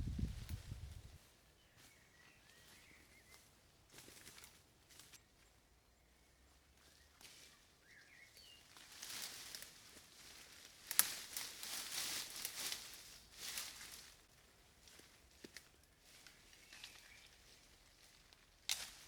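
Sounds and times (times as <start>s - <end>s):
rustling and crunching in brush: 0.0s - 5.5s, 6.8s - 19.0s
faint bird chirp: 0.2s - 4.2s, 5.2s - 8.8s, 15.7s - 17.6s.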